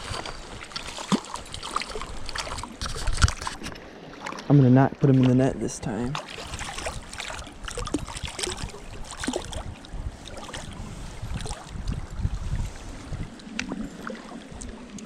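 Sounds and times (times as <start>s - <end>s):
water splashing and sloshing: 0.0s - 15.0s
wind rumble on microphone: 5.0s - 15.0s.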